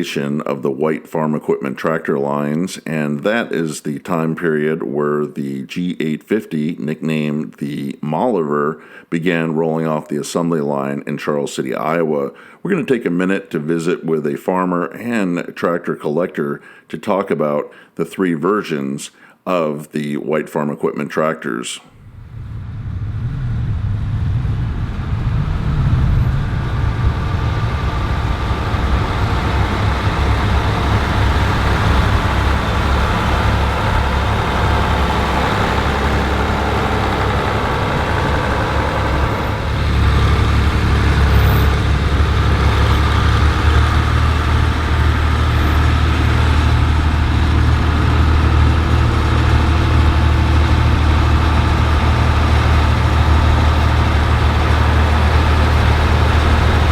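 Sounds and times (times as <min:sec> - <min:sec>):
tractor engine running: 0:24.6 - 0:56.9.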